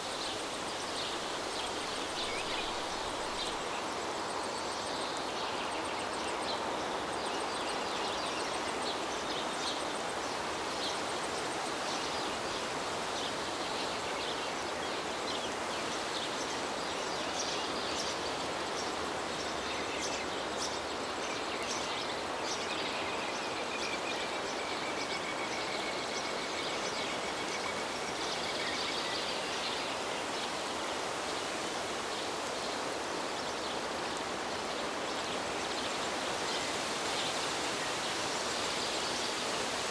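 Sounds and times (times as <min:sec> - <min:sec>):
river water rushing: 0:00.0 - 0:07.6, 0:26.8 - 0:39.9.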